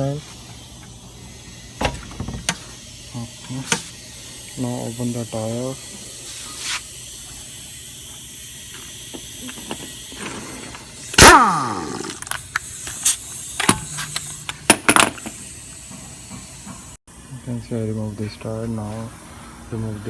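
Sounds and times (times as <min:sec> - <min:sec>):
impact wrench burst: 0:10.9 - 0:15.7.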